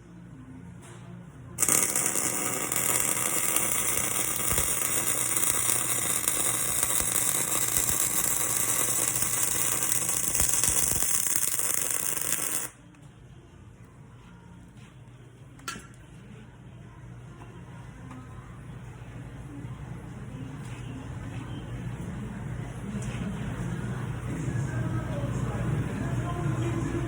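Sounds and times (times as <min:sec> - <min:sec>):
arc welding crackling hiss: 0:01.6 - 0:12.8.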